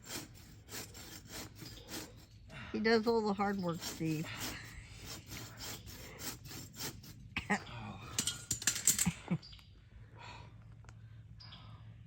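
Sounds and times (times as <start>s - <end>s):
blade rasping through rubber: 0.0s - 7.4s.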